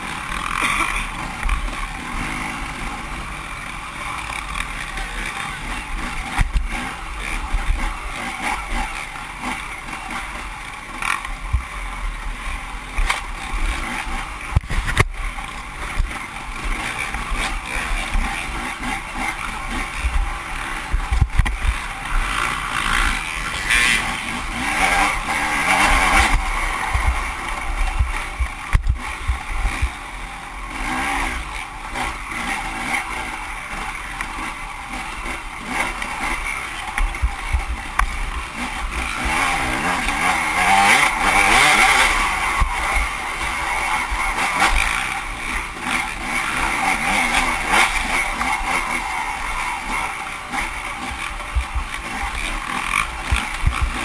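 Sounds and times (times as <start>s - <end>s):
dirt bike engine running hard: 0.0s - 54.0s
low thumps from rough ground: 13.0s - 18.3s, 19.7s - 22.4s, 25.8s - 30.2s, 53.0s - 54.0s.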